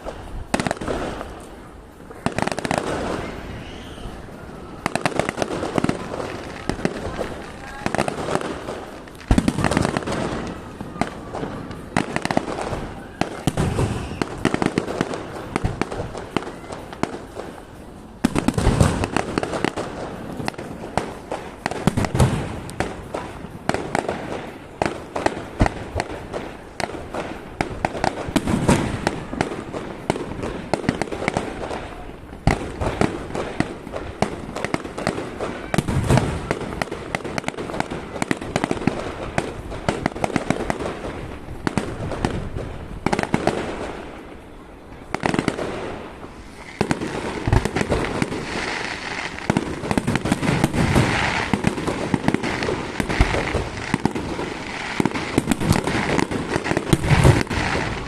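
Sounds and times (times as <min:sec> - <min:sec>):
fireworks crackling and popping: 0:00.0 - 0:58.0.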